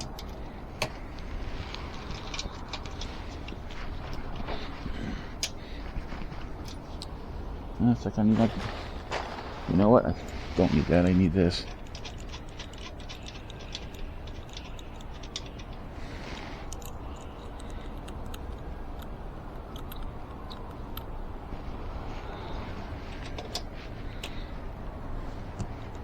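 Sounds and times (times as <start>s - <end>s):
steady low hum: 0.0s - 26.0s
hand tool clicking and rattling: 11.5s - 20.7s.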